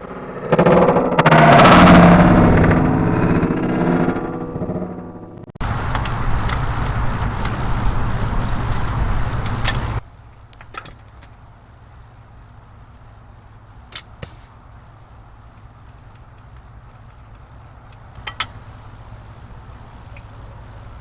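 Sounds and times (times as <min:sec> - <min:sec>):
low hum: 0:00.0 - 0:10.6
loud steady noise: 0:00.0 - 0:21.0
sharp clicks: 0:05.8 - 0:11.4.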